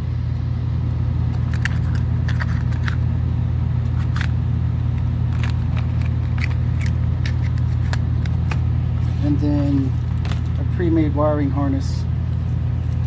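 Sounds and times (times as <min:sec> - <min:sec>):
steady low hum: 0:00.0 - 0:13.0
parts and wiring handled: 0:01.3 - 0:03.1, 0:03.8 - 0:10.7.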